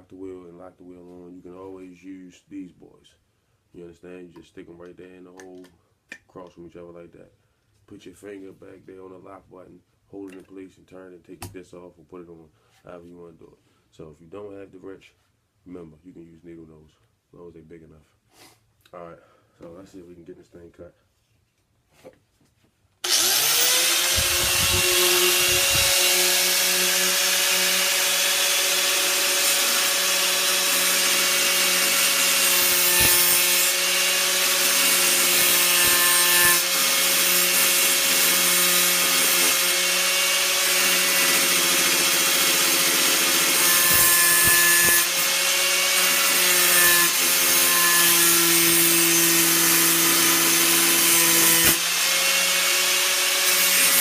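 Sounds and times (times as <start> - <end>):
angle grinder cutting steel: 23.0 - 54.0.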